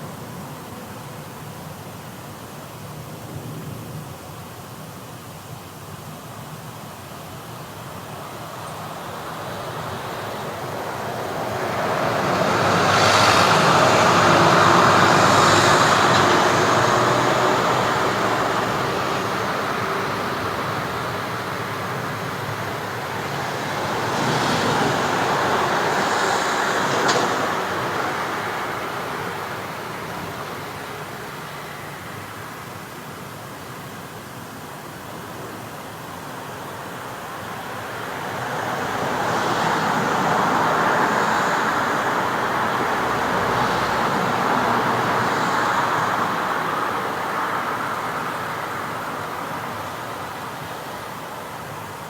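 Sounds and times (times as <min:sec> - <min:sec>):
vehicle passing by: 0:09.5 - 0:32.0, 0:38.0 - 0:50.2.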